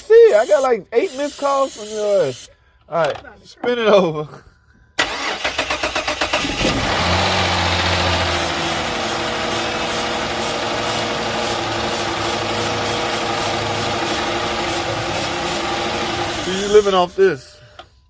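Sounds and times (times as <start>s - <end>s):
car engine cranking and idling: 5.0s - 16.9s.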